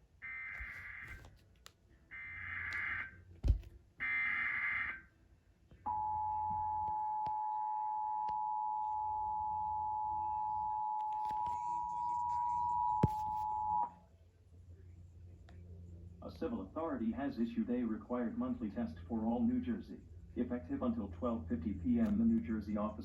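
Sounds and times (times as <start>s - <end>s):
thump: 3.4s - 3.7s.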